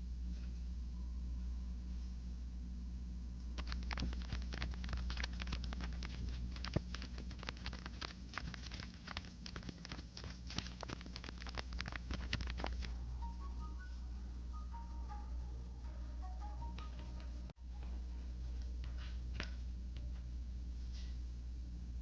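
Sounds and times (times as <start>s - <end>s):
steady low hum: 0.0s - 22.0s
paper crinkling: 3.6s - 12.9s.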